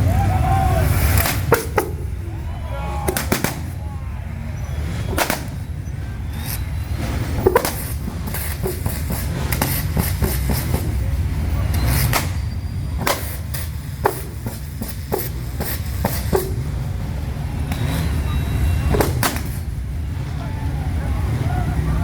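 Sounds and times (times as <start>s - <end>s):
deep uneven engine rumble: 0.0s - 22.0s.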